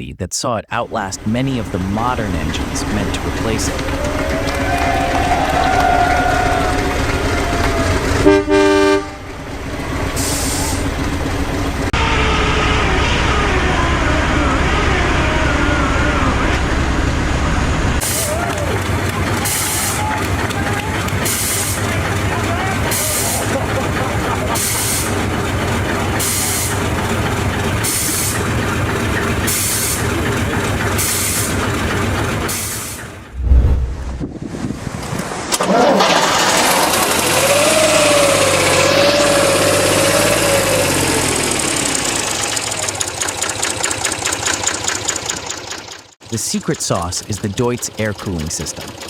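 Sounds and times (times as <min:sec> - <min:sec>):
diesel engine rumble: 0:00.0 - 0:49.0
locomotive horn blast: 0:02.4 - 0:09.5.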